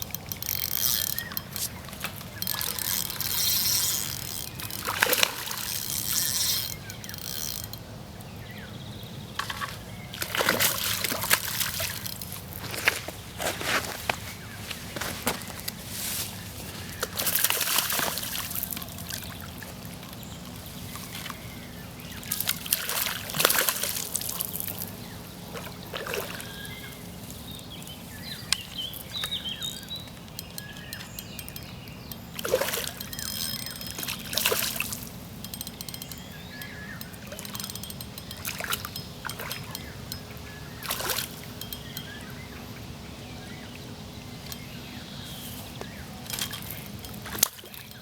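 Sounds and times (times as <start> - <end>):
water splashing: 0.0 - 7.8, 28.8 - 42.2
water trickling: 0.0 - 8.5, 10.1 - 15.8, 16.7 - 48.0.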